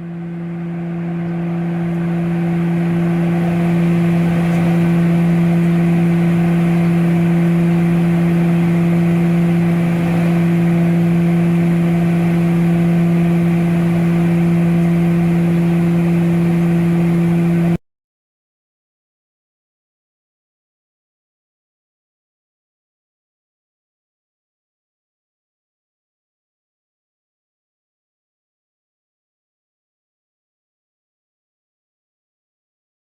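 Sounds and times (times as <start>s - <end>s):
airliner engines droning in cabin: 0.0s - 17.8s.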